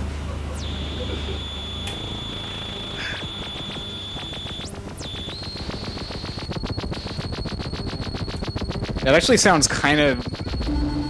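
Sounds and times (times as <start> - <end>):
rough low synthesizer drone: 0.0 - 5.0, 10.4 - 11.0
high-pitched synthesizer whine: 0.0 - 11.0.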